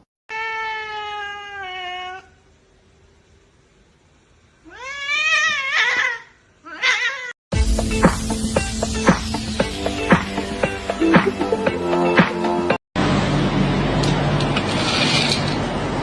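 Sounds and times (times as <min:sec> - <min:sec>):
cat meowing: 0:04.6 - 0:07.3.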